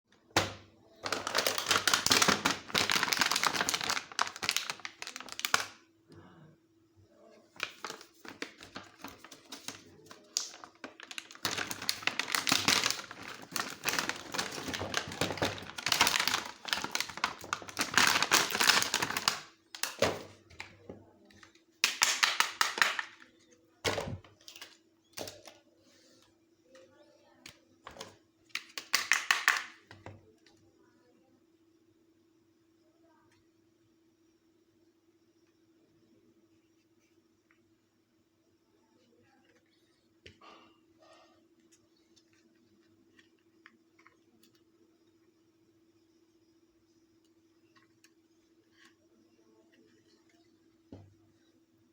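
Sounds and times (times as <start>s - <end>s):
faint steady hum: 0.1s - 51.9s
plastic packaging crinkling: 0.4s - 5.8s, 7.6s - 20.2s, 21.8s - 23.2s.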